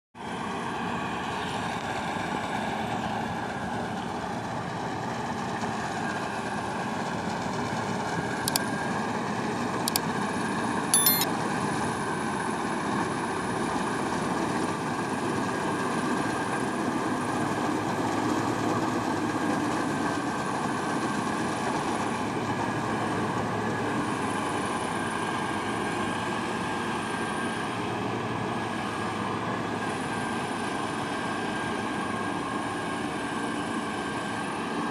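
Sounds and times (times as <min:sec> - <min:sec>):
farm machinery engine drone: 0:00.2 - 0:10.8, 0:11.5 - 0:34.9
sharp clicks: 0:08.5 - 0:08.7, 0:11.0 - 0:11.3.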